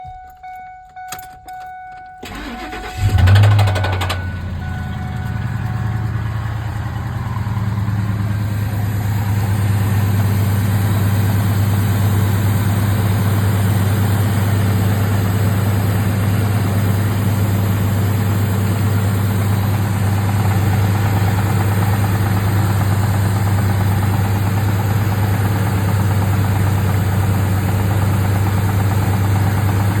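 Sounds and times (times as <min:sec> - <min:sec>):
truck engine idling: 0:00.0 - 0:30.0
engine starter cranking: 0:00.1 - 0:06.2.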